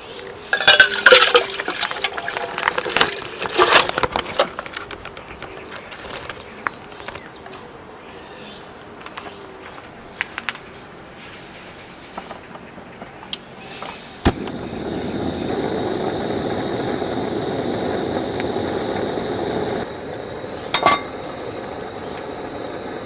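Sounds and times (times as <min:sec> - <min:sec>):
cookware clinking and knocking: 0:00.6 - 0:01.5, 0:20.8 - 0:21.1
steady rushing noise: 0:14.3 - 0:23.0.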